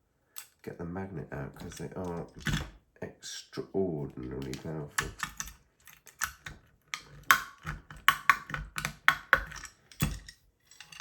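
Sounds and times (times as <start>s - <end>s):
metal parts clicking and knocking: 0.3s - 0.6s, 1.6s - 2.8s, 4.2s - 11.0s.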